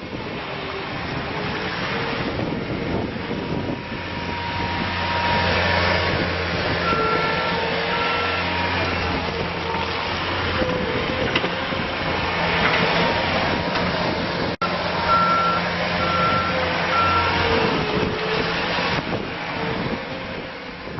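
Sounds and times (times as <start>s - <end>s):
diesel engine running: 0.0s - 20.9s
backup alarm beeping: 15.0s - 17.4s.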